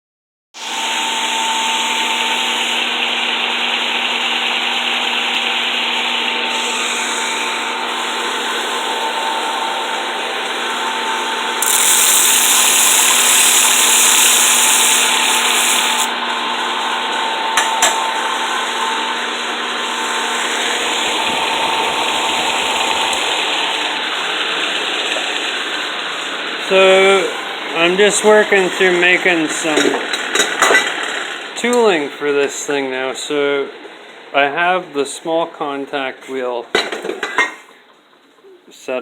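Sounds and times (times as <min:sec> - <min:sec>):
belt grinder running: 0:00.9 - 0:16.2, 0:17.8 - 0:25.4.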